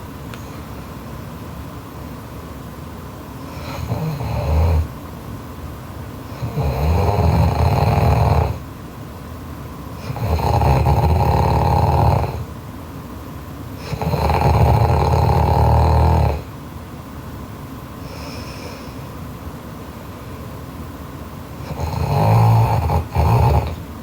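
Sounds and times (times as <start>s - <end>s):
girl snoring loudly: 3.5s - 4.9s, 6.4s - 8.6s, 10.0s - 12.5s, 13.8s - 16.5s, 21.6s - 23.8s
quiet breathing: 18.0s - 19.2s.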